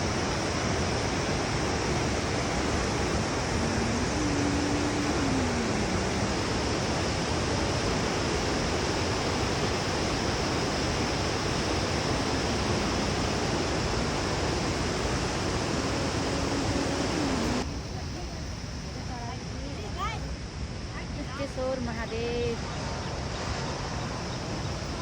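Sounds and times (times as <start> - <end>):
waterfall rushing: 0.0 - 17.6.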